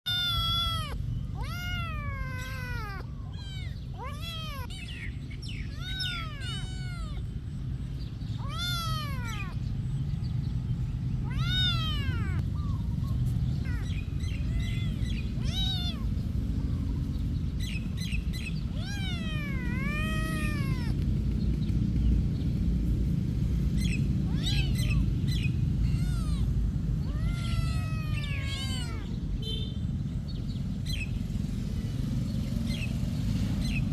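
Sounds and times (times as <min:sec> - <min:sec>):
cat meowing: 0:00.0 - 0:09.7, 0:11.2 - 0:21.0, 0:23.8 - 0:29.4
low background rumble: 0:00.1 - 0:32.0.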